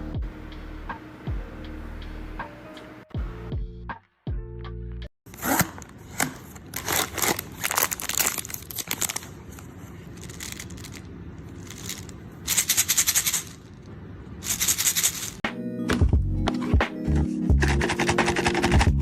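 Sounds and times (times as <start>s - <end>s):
plastic packaging crinkling: 5.3s - 13.7s.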